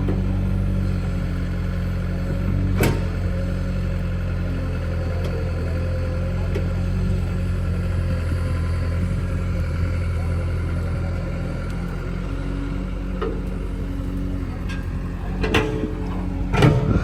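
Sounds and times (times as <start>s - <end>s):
diesel machinery running: 0.0s - 17.0s.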